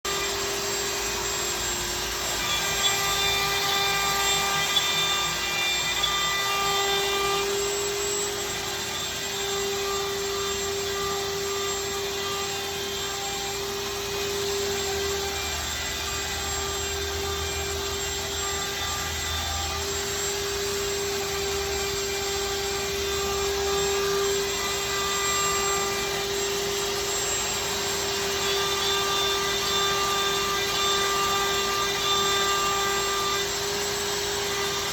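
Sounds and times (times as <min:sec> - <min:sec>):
router spindle whine: 0:00.1 - 0:34.9.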